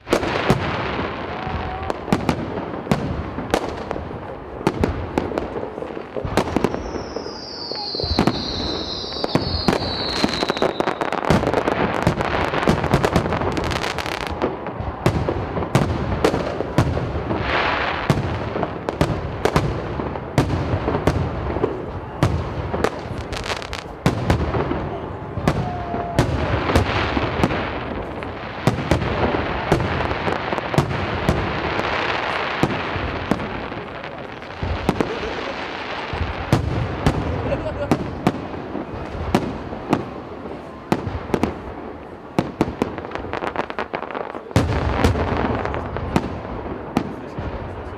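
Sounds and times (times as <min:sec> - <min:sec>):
fireworks bangs and crackles: 0:00.0 - 0:47.9
falling firework whistle: 0:00.1 - 0:02.4, 0:06.3 - 0:15.8, 0:25.4 - 0:27.6.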